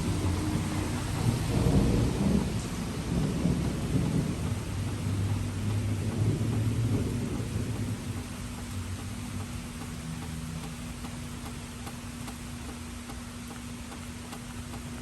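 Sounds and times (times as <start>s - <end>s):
rolling thunder rumble: 0.0s - 8.3s
steady rain: 0.0s - 15.0s.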